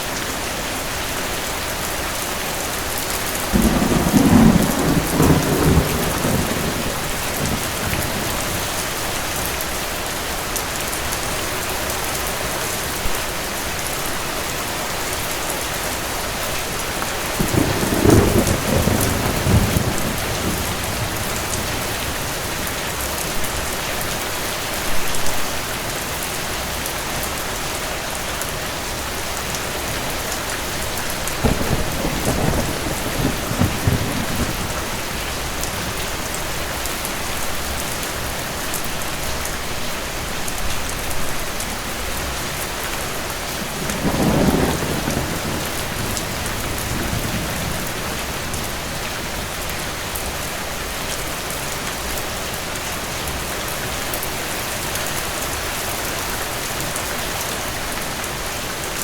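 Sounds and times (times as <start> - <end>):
steady rain: 0.0 - 59.0
distant thunder rolling: 3.5 - 9.0, 17.4 - 22.8, 31.3 - 36.4, 43.6 - 49.0.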